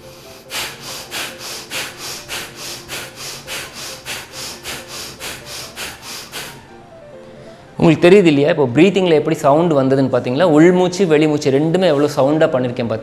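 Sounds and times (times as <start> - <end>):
forceful nasal breathing: 0.0 - 7.8.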